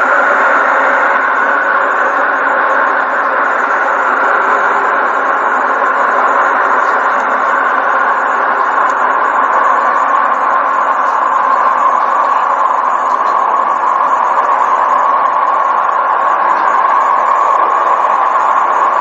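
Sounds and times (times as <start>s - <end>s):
held hum: 0.0s - 19.0s.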